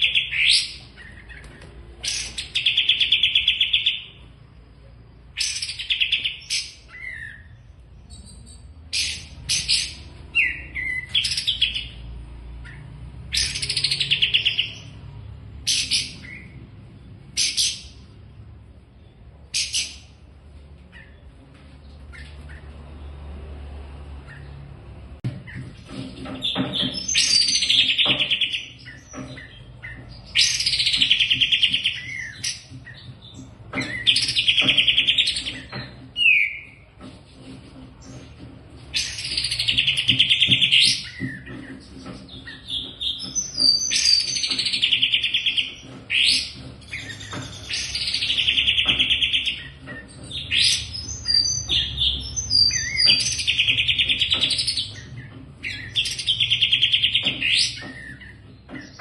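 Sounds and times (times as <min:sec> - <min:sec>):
songbird trilling: 0:00.0 - 0:04.2, 0:05.3 - 0:12.0, 0:39.0 - 0:59.0.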